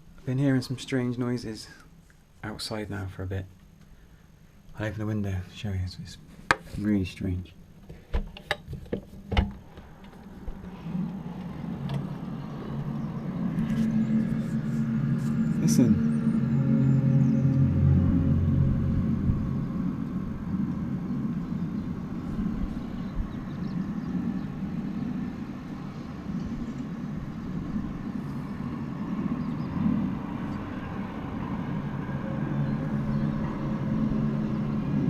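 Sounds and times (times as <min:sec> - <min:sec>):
steady low rumble: 0:09.3 - 0:35.0
low droning trumpet-like tone: 0:10.2 - 0:26.2, 0:27.2 - 0:35.0.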